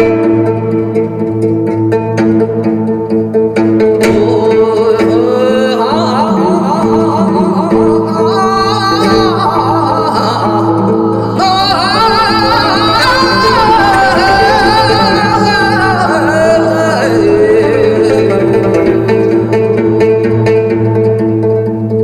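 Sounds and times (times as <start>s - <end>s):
plucked strings: 0.0s - 22.0s
person singing with heavy vibrato: 4.0s - 20.9s.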